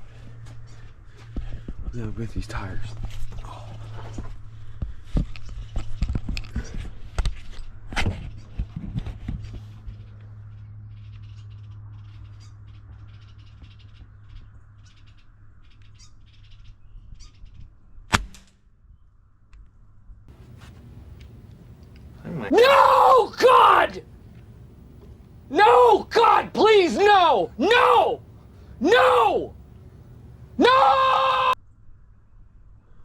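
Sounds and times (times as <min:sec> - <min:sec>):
pellet gun shot: 0:18.1 - 0:18.5
low steady hum: 0:20.3 - 0:31.6
birds chirping: 0:20.4 - 0:31.5.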